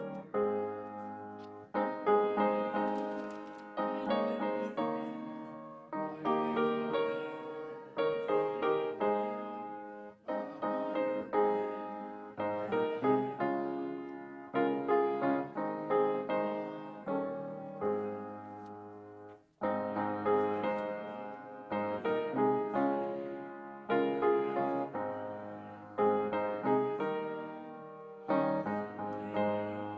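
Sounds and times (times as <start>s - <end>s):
solo piano slow chords: 0.0s - 29.9s.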